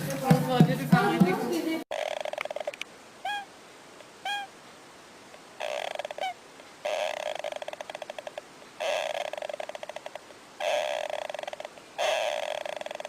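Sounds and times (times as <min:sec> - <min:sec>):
animal chattering trills: 0:01.9 - 0:03.5, 0:04.2 - 0:04.5, 0:05.6 - 0:13.0
animal squeaky calls: 0:01.9 - 0:03.5, 0:04.2 - 0:04.5, 0:05.6 - 0:13.0.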